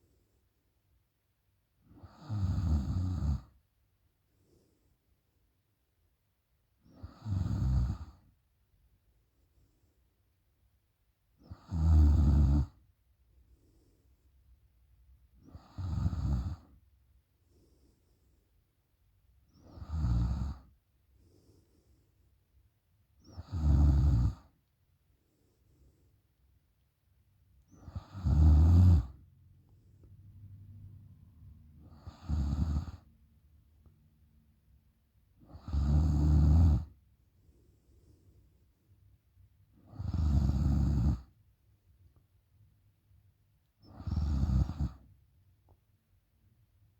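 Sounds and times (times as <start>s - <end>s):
woman snoring: 2.0s - 3.5s, 6.9s - 8.2s, 11.4s - 12.7s, 15.4s - 16.7s, 19.7s - 20.6s, 23.3s - 24.4s, 27.8s - 29.2s, 31.8s - 33.1s, 35.5s - 36.9s, 39.9s - 41.3s, 43.9s - 45.0s
faint breathing: 17.4s - 18.6s, 21.1s - 22.4s, 25.1s - 26.4s, 29.0s - 33.1s, 37.2s - 39.0s.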